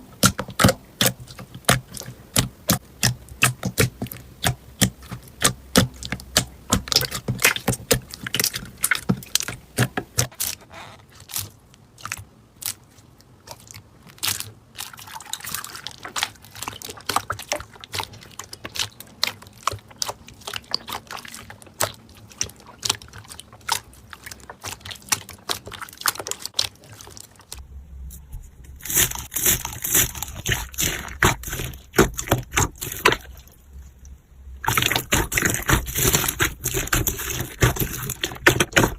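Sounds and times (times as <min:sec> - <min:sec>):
slime crackling and popping: 0:28.7 - 0:38.9.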